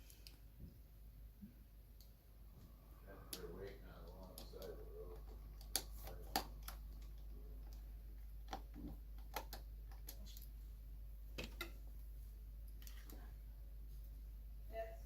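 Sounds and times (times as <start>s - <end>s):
faint low hum: 0.0s - 15.0s
tools clicking and tapping: 3.3s - 10.5s, 11.4s - 11.8s.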